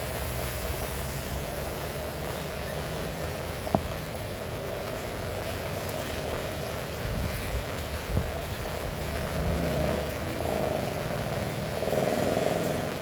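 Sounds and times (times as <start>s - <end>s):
heavy rain falling: 7.7s - 13.0s.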